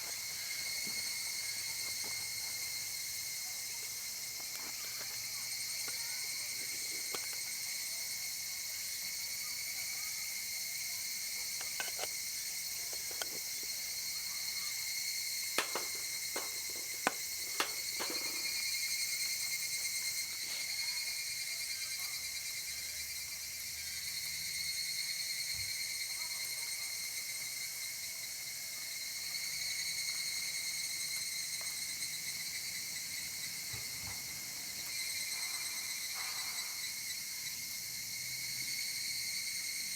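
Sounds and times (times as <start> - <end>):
insects droning: 0.0 - 39.9
sharp clicks and knocks: 11.4 - 12.2, 12.8 - 13.8, 15.6 - 18.6.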